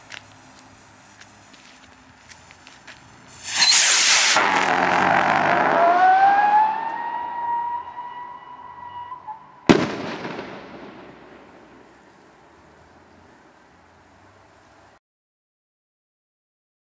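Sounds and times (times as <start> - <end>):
whistle rocket whistling: 3.4 - 4.7, 5.8 - 9.5
firework bang echoing: 3.4 - 5.1, 9.7 - 11.9.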